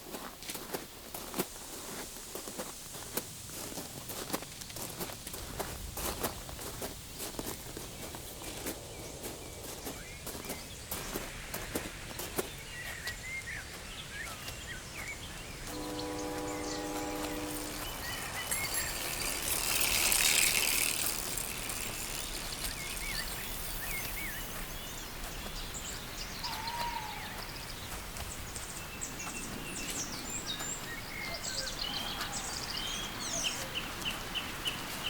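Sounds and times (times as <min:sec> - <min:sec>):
steady outdoor hiss: 0:00.0 - 0:35.0
songbirds chirping: 0:06.2 - 0:35.0.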